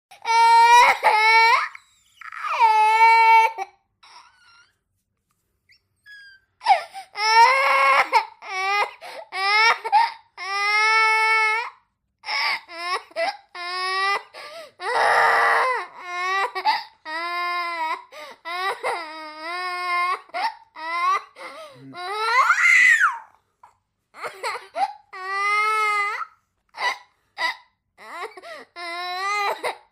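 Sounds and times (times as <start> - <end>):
child crying: 0.2 - 4.7, 6.1 - 23.3.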